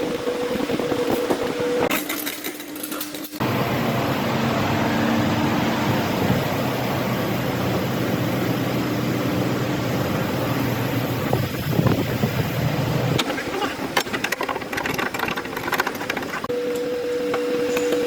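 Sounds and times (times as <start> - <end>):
vehicle engine idling: 3.4 - 11.8.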